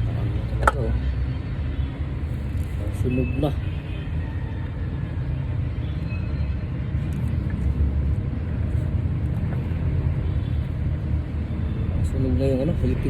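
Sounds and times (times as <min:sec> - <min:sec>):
steady low rumble: 0:06.6 - 0:11.5.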